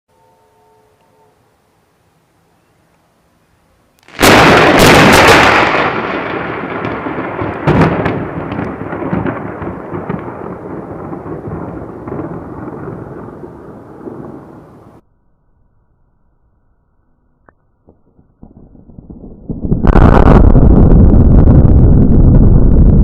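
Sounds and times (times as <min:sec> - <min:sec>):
thunder crash: 0:04.1 - 0:15.0, 0:17.9 - 0:23.0
thunder rumble: 0:04.1 - 0:15.0, 0:17.8 - 0:23.0.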